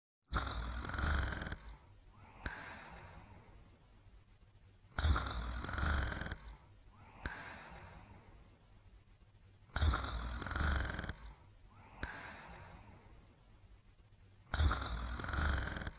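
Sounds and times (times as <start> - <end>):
person snoring: 0.3 - 3.5, 5.0 - 8.3, 9.7 - 13.0, 14.5 - 15.9
soft breath: 1.5 - 4.0, 6.2 - 8.9, 11.1 - 13.6.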